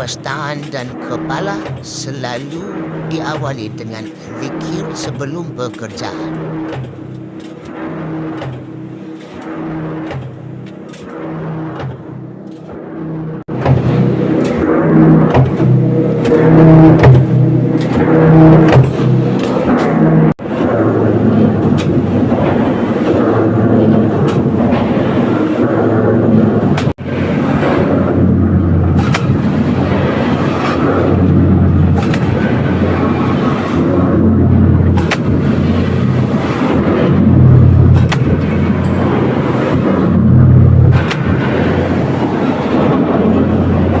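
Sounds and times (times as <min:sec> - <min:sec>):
constant low hum: 0:00.0 - 0:44.0
stamping press machinery running: 0:23.5 - 0:44.0.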